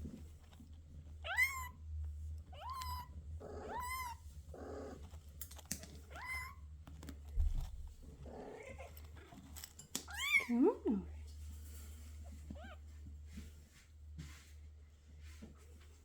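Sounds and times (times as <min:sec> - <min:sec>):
kittens mewing: 0:02.6 - 0:05.0.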